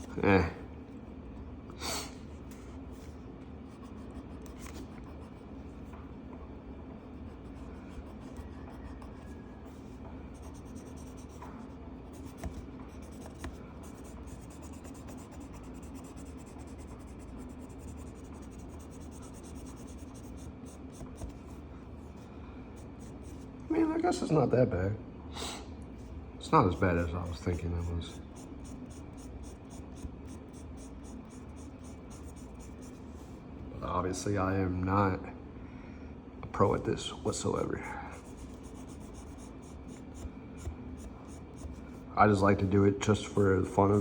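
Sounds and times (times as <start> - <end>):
low steady hum: 0.0 - 44.0
colored pencil scratching on paper: 2.5 - 5.4, 7.0 - 21.6, 22.7 - 23.5, 26.0 - 33.2, 38.1 - 42.0, 43.0 - 44.0.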